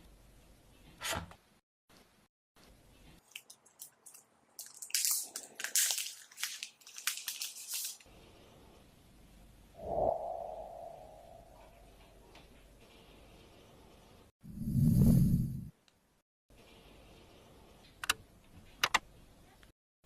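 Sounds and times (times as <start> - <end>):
packaging crinkling: 3.2 - 8.1.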